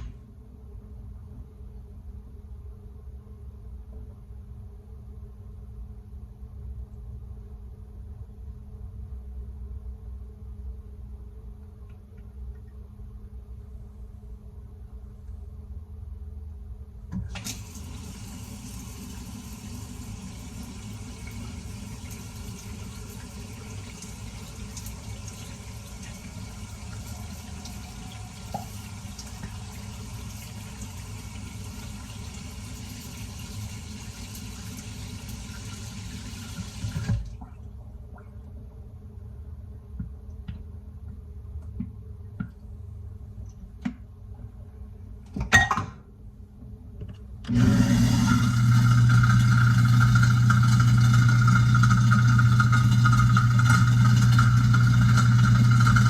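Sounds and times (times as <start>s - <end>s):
faucet running into sink: 17.4s - 37.2s, 47.6s - 56.0s.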